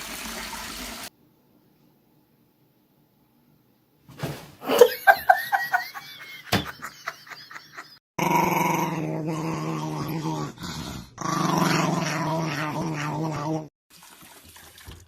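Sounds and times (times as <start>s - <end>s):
dog growling: 8.2s - 13.7s.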